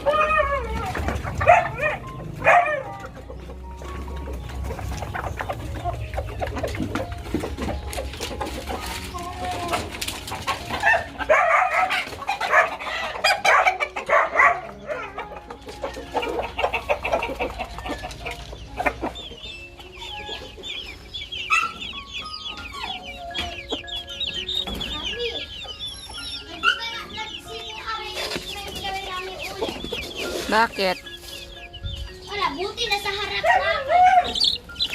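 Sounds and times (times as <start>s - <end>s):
chickens clucking: 0.0s - 34.9s
rapid high chirps: 34.2s - 34.9s.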